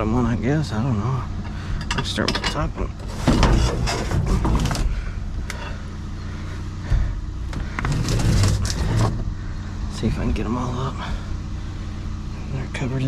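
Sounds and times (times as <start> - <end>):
vehicle engine idling: 0.0 - 13.0
objects knocking and rattling: 1.8 - 4.9.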